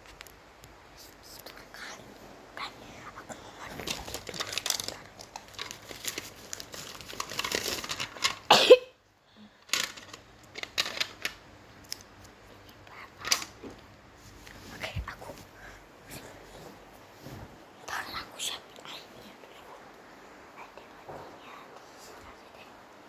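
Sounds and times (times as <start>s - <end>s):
crinkling and rustling: 0.0s - 2.2s, 3.0s - 8.6s, 9.6s - 15.6s.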